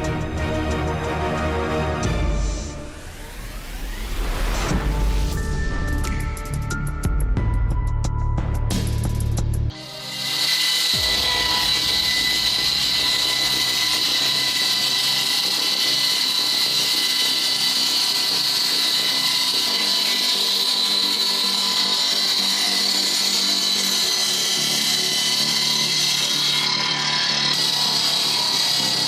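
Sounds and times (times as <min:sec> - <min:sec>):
woodworking machine whining: 0:09.7 - 0:29.0.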